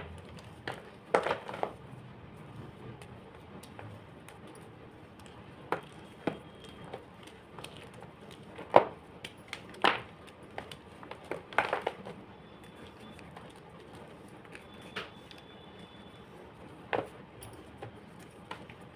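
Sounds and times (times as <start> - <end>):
chalk crunching and cracking: 5.1 - 15.4.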